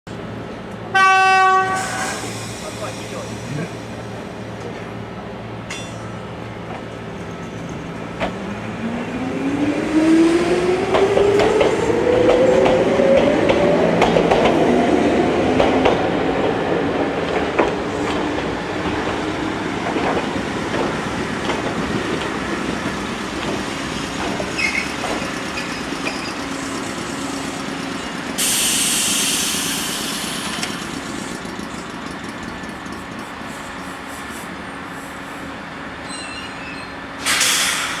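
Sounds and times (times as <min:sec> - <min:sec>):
wheels clacking over rail joints: 0:19.8 - 0:28.4, 0:30.2 - 0:33.5
short hiss: 0:37.2 - 0:38.0.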